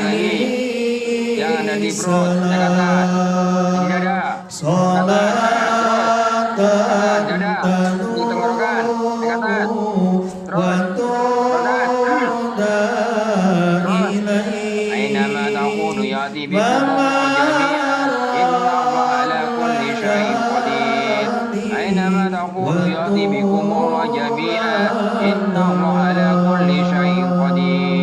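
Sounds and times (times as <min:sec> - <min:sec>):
melodic religious chanting: 0:00.0 - 0:28.0.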